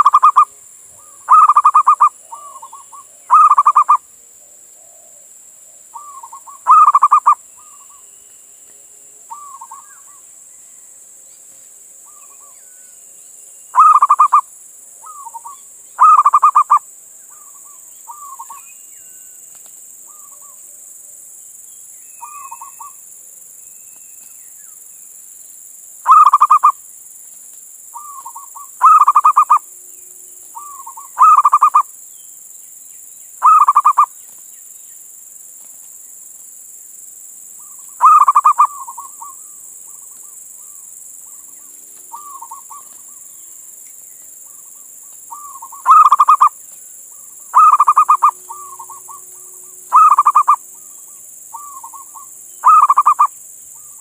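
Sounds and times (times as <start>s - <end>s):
dove cooing: 0.0s - 7.9s, 13.8s - 14.4s, 15.0s - 18.6s, 26.1s - 26.8s, 28.0s - 29.6s, 30.6s - 31.8s, 33.4s - 34.1s, 37.6s - 40.8s, 42.1s - 43.1s, 45.3s - 46.6s, 47.5s - 53.9s.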